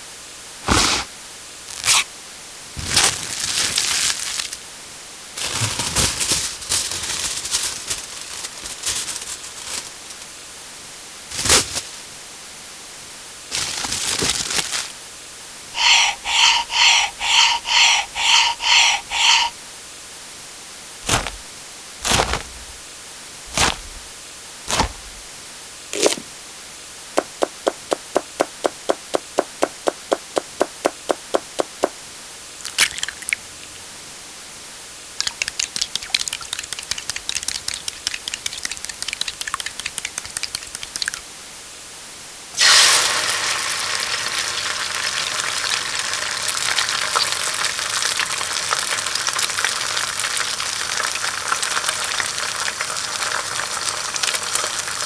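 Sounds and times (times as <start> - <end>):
scraping and rustling: 5.4 - 10.2, 21.0 - 22.9, 23.5 - 25.3.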